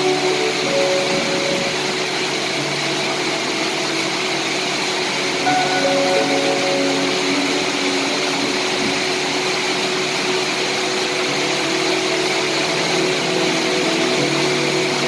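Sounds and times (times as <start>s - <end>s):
faint sustained tones: 0.0s - 15.0s
steady rain falling: 0.0s - 15.0s.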